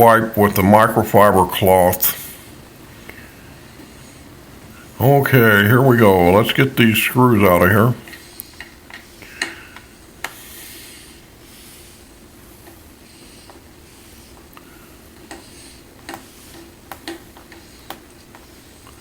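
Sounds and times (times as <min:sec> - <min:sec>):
low hiss: 0:00.0 - 0:19.0.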